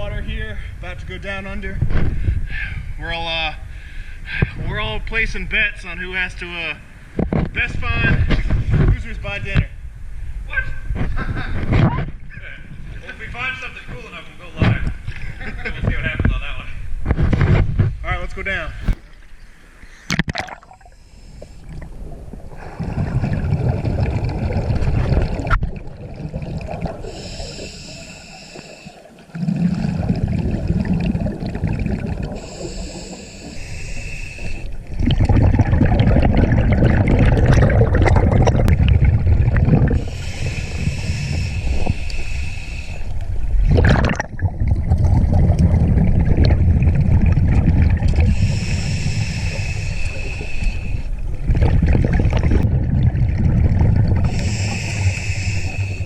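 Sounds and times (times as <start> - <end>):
diver exhaling bubbles: 18.8 - 56.0
regulator inhale hiss: 20.8 - 21.8, 27.0 - 29.2, 32.3 - 34.8, 40.0 - 43.3, 48.2 - 51.2, 54.2 - 56.0.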